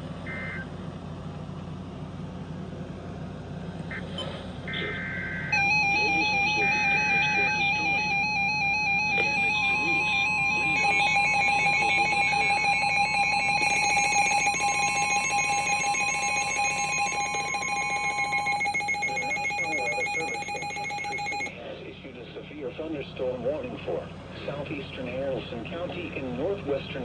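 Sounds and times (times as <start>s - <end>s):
warbling electronic alert tones: 5.5s - 21.5s.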